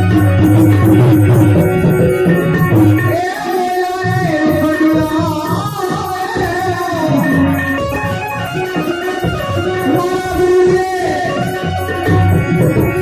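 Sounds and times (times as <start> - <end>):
drum rhythm: 0.0 - 13.0
person singing devotional song: 2.8 - 13.0.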